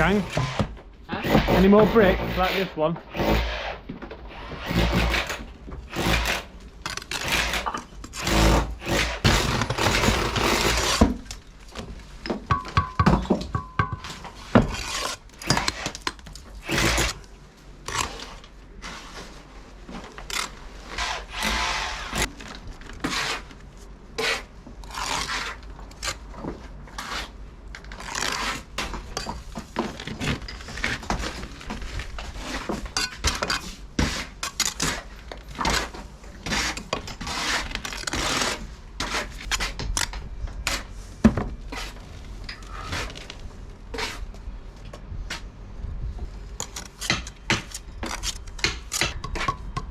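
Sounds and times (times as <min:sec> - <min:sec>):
tools scraping brick: 0:00.0 - 0:11.4, 0:12.5 - 0:17.2, 0:20.2 - 0:26.3, 0:26.9 - 0:29.5, 0:32.2 - 0:40.9, 0:41.7 - 0:43.3, 0:43.9 - 0:44.3
knocks and taps on brick: 0:12.4 - 0:14.7.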